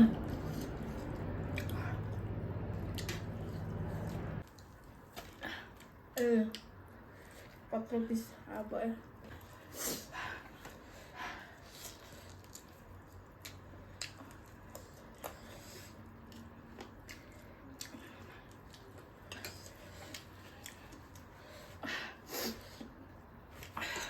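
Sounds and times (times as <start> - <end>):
soft chewing: 0.0 - 7.7, 10.4 - 21.8, 22.5 - 24.0
mouth clicks and wet smacks: 12.2 - 15.4.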